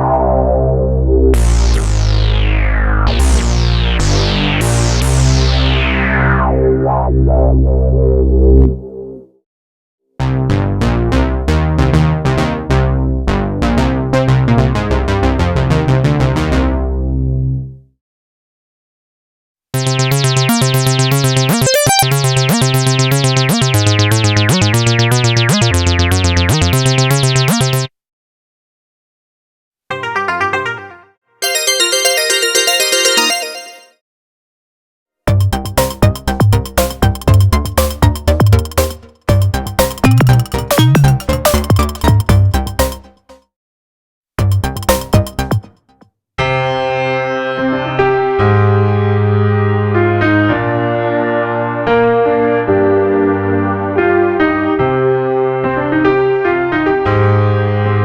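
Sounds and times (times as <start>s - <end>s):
synth chords: 0.0s - 6.4s, 19.8s - 27.9s, 29.9s - 33.9s, 35.6s - 43.1s
upward pitch sweep: 0.0s - 7.5s, 19.8s - 27.9s, 30.0s - 33.9s.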